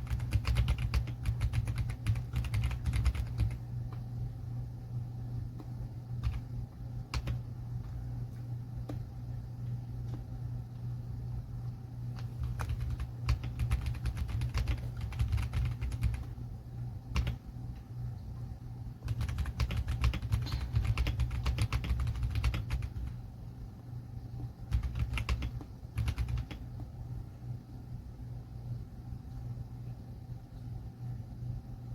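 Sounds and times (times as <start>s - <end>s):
mechanical keyboard typing: 0.0s - 4.0s, 6.2s - 6.5s, 7.1s - 7.5s, 12.2s - 16.4s, 17.1s - 17.4s, 19.0s - 23.2s, 24.6s - 26.9s
steady low hum: 0.0s - 31.9s.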